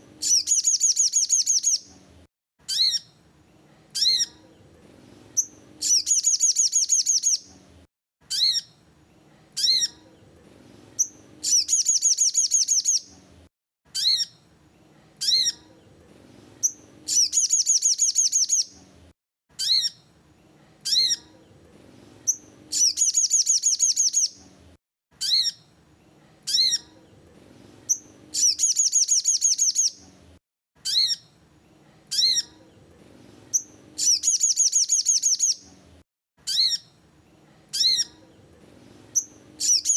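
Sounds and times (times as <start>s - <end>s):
bird chirps: 0.2s - 1.9s, 2.6s - 3.2s, 5.4s - 7.5s, 8.3s - 8.8s, 11.0s - 13.1s, 13.9s - 14.4s, 16.6s - 18.8s, 19.6s - 20.1s, 22.2s - 24.4s, 25.2s - 25.7s, 27.9s - 30.0s, 30.8s - 31.4s, 33.5s - 35.7s, 36.4s - 37.0s, 39.1s - 39.9s
high bird trill: 0.2s - 2.0s, 2.6s - 3.2s, 3.9s - 4.4s, 5.3s - 7.5s, 8.2s - 8.8s, 9.6s - 10.0s, 11.0s - 13.1s, 13.9s - 14.4s, 15.2s - 15.8s, 16.6s - 18.8s, 19.5s - 20.1s, 20.8s - 21.4s, 22.2s - 24.4s, 25.2s - 25.7s, 26.4s - 27.0s, 27.8s - 30.0s, 30.8s - 31.4s, 32.1s - 32.8s, 33.5s - 35.7s, 36.4s - 37.0s, 37.7s - 38.4s, 39.1s - 39.9s.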